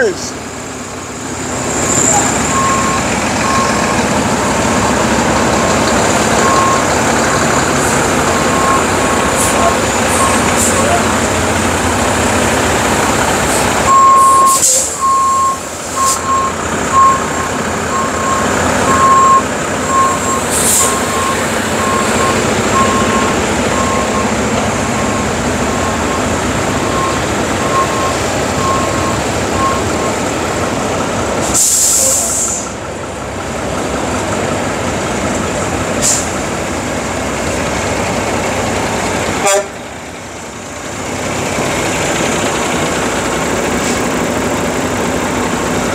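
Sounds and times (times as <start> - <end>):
diesel truck engines running: 0.0 - 45.9
truck reversing alarm beeping: 0.8 - 32.8
air hissing: 31.4 - 32.8.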